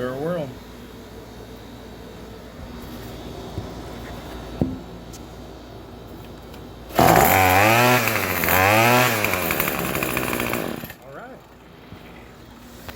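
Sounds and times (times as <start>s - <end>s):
weed eater engine revving: 6.9s - 11.0s.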